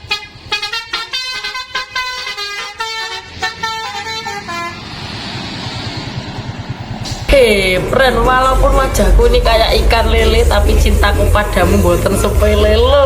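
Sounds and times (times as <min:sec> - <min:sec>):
musical air horn melody: 0:00.0 - 0:04.8
engine running: 0:00.0 - 0:13.0.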